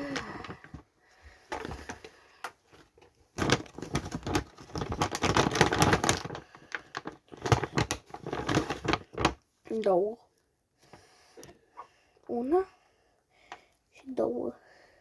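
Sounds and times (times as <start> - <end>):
rustling and crackling handling: 0.0 - 9.5.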